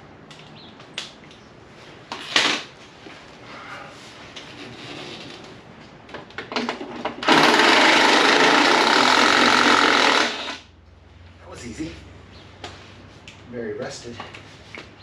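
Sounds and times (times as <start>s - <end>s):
power tool spinning out bolt: 7.1s - 10.6s.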